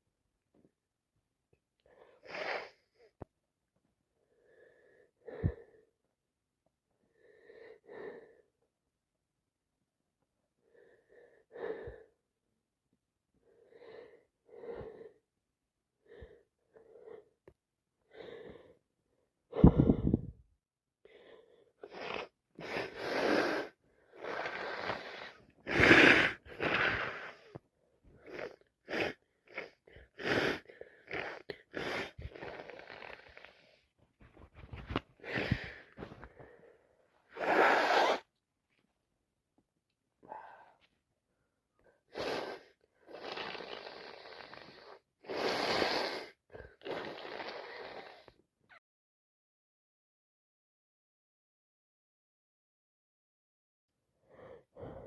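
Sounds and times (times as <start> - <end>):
woman sniffing through congested nose: 2.1 - 3.1, 21.8 - 27.6, 28.2 - 33.8, 35.2 - 36.2, 37.3 - 38.3, 42.1 - 48.4
harsh nasal blasts: 21.9 - 27.4, 37.4 - 38.3, 42.1 - 48.3.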